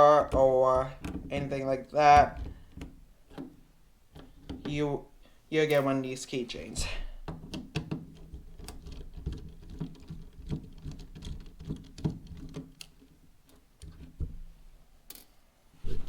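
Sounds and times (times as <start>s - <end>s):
screwdriver clicking on plastic: 0.2s - 4.8s, 7.2s - 14.3s.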